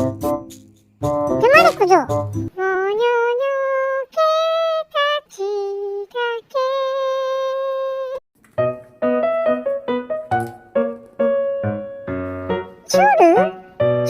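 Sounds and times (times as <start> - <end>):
high voice singing: 2.6 - 8.2
keyboard chords: 8.4 - 14.0.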